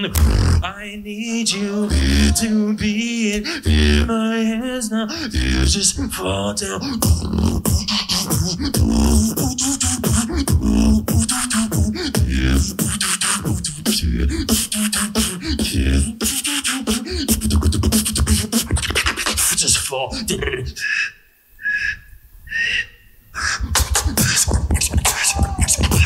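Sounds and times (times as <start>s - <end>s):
beatboxing: 0.0s - 4.3s, 5.2s - 26.0s
melodic vocal line: 0.0s - 12.0s.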